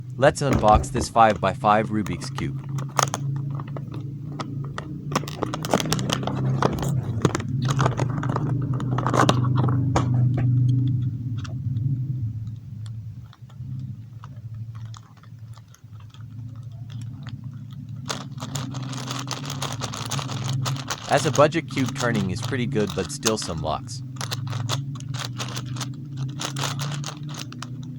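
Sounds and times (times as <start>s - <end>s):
steady low hum: 0.0s - 26.4s
crinkling plastic packaging: 2.0s - 10.6s, 12.8s - 27.9s
box handling: 5.2s - 10.6s.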